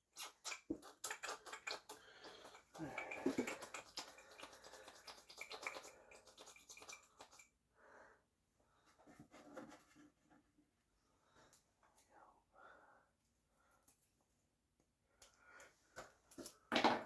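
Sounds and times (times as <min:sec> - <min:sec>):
faint handling sounds: 0:08.7 - 0:12.2.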